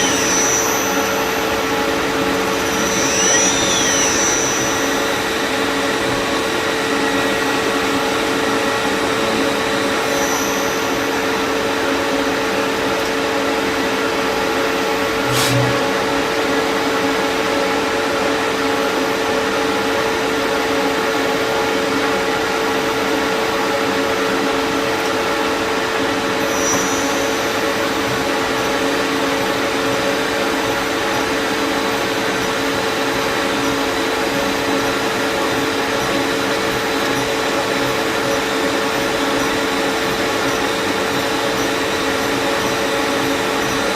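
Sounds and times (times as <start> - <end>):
lathe running: 0.0 - 13.0.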